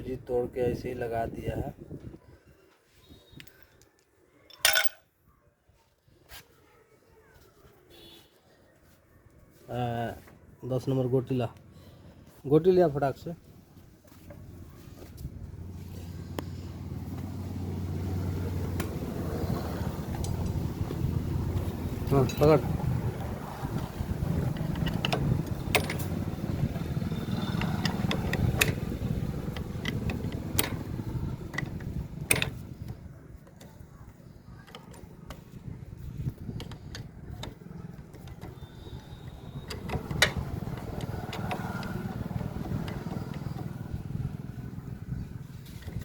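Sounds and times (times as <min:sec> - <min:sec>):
metallic clicks of hand tools: 0:24.6 - 0:26.1, 0:27.5 - 0:30.9.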